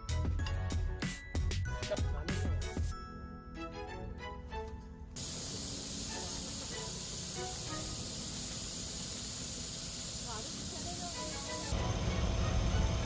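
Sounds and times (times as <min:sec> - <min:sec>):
background music: 0:00.0 - 0:08.2, 0:10.8 - 0:13.0
steady hiss: 0:05.2 - 0:11.8.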